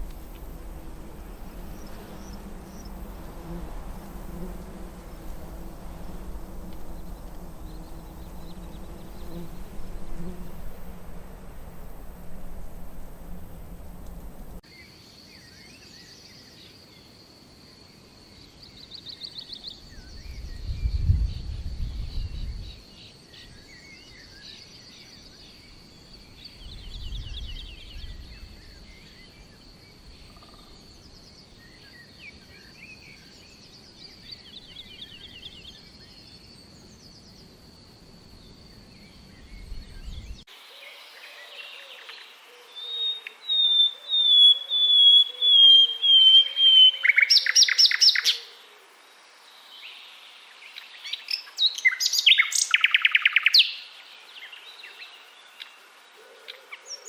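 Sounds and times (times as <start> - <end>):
small birds chirping: 0.0 - 14.6, 41.4 - 48.5
high insect drone: 0.0 - 56.3
low rumbling: 6.3 - 14.6.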